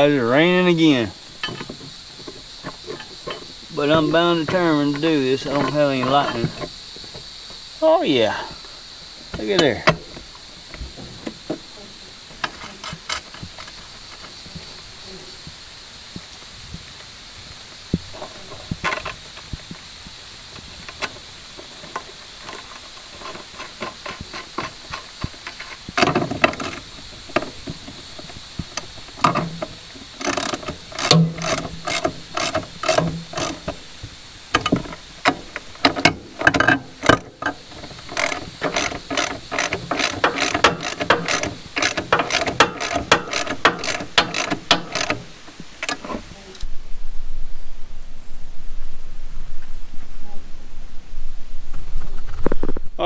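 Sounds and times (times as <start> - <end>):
ratchet wrench clicking: 22.4 - 33.8, 34.5 - 46.0.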